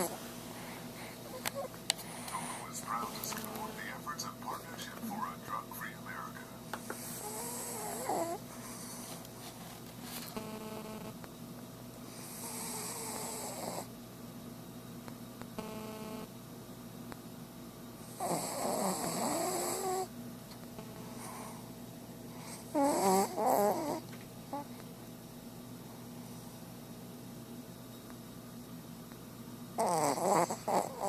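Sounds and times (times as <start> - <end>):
dog snoring: 1.0 - 5.4, 7.0 - 9.2, 12.1 - 13.9, 18.0 - 20.1, 20.8 - 21.7, 22.4 - 24.7, 29.8 - 31.0.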